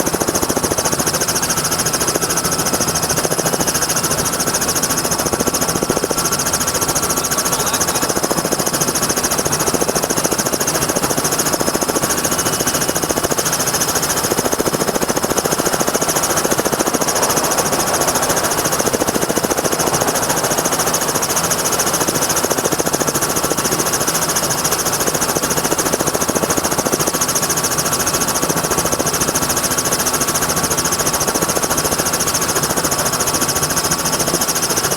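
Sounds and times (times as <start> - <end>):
helicopter rotor chopping: 0.0 - 34.9
turbine whine: 1.6 - 25.6.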